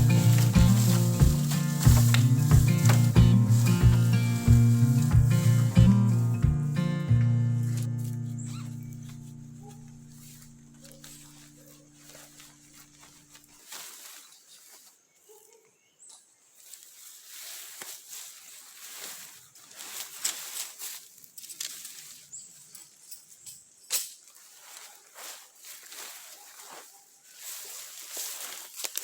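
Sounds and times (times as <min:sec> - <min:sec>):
background music chord: 0:00.0 - 0:13.0
rustling: 0:00.0 - 0:15.4, 0:16.5 - 0:29.0.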